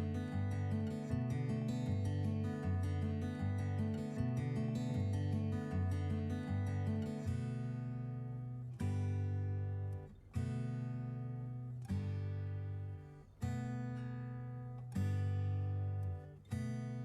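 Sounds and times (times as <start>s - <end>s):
acoustic guitar chords strummed: 0.0s - 17.0s.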